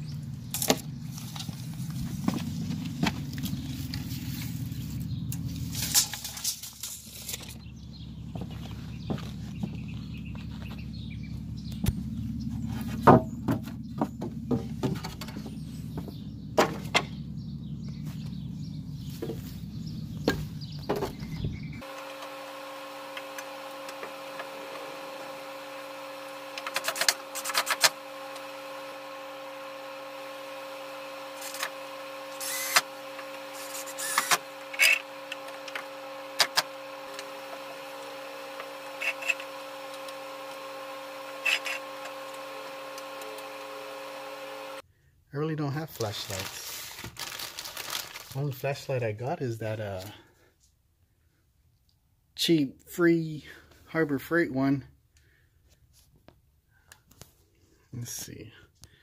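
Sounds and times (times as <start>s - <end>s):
low rumble: 0.0s - 21.8s.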